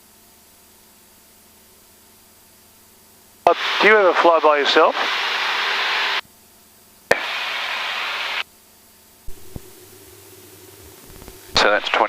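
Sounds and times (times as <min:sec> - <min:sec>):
radio static hiss: 0:03.5 - 0:06.2, 0:07.1 - 0:08.4, 0:09.3 - 0:12.0
faint low hum: 0:07.2 - 0:12.0.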